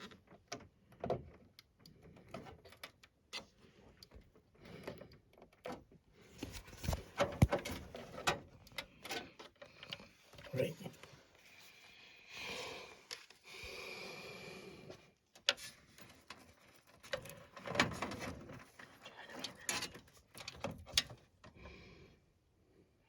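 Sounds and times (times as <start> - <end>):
cable connectors clicking and rustling: 0.1 - 11.2
breaths close to microphone: 11.0 - 15.1.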